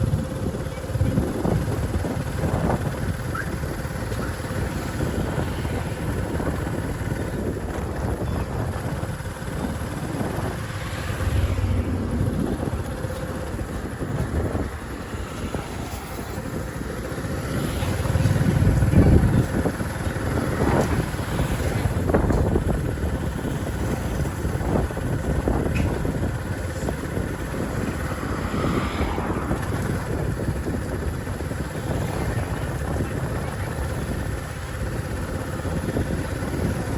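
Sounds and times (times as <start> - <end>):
road traffic rumble: 0.0 - 36.9
vehicle passing: 8.9 - 24.8, 25.4 - 33.0.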